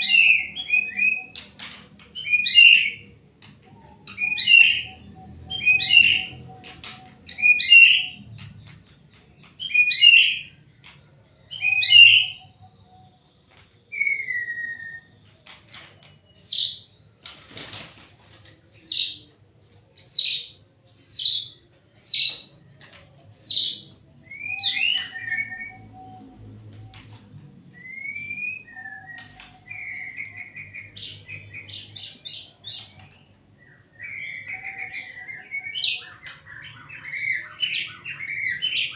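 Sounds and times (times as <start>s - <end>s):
bird singing whistled phrases: 23.4s - 27.1s, 27.7s - 32.8s.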